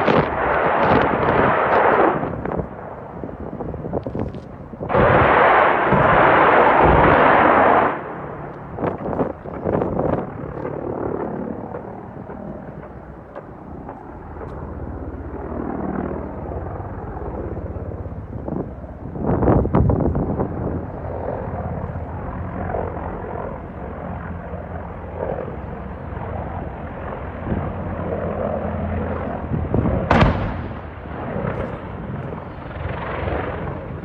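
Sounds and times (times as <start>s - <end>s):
helicopter engine and rotor: 0.0s - 30.2s, 31.0s - 34.0s
loud rushing blast: 4.9s - 8.4s, 30.0s - 31.6s
gunfire cracks: 30.1s - 30.9s.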